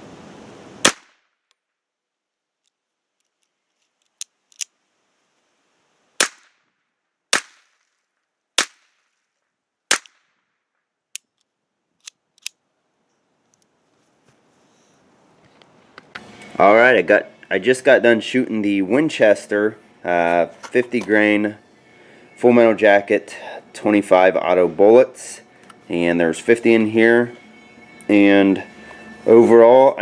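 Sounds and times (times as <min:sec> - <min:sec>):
pistol shots: 0:00.8 - 0:01.1, 0:06.2 - 0:06.5, 0:07.3 - 0:07.7, 0:09.9 - 0:10.2.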